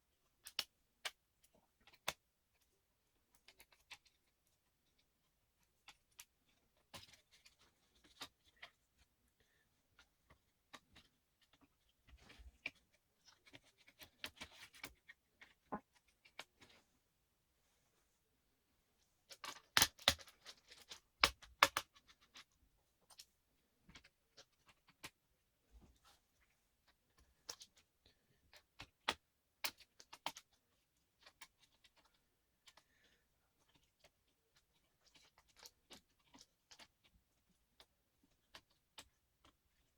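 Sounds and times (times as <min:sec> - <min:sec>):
small clicks and taps on laptop: 0:00.3 - 0:09.1, 0:19.3 - 0:23.3, 0:28.5 - 0:37.1
clicks and taps of small parts: 0:19.3 - 0:22.5.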